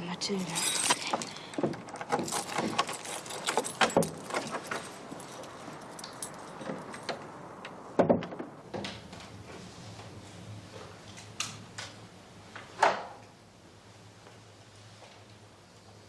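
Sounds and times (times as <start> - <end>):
keys jangling: 0.3 - 7.2.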